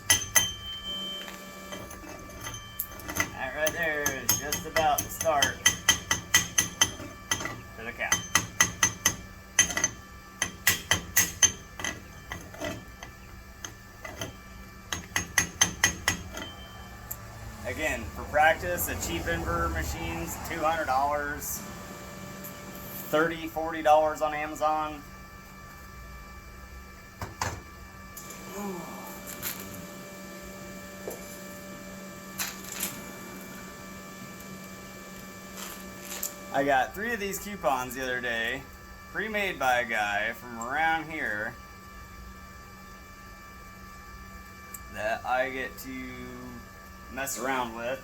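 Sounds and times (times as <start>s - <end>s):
hammer striking steel: 0.0s - 14.3s, 14.9s - 16.8s
steady electrical hum: 0.0s - 48.0s.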